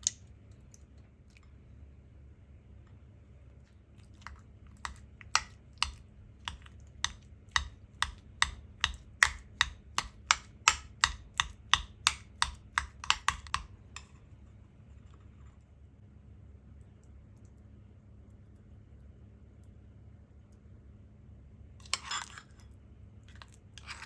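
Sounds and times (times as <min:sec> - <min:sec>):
knife chopping on cutting board: 0:04.8 - 0:13.7.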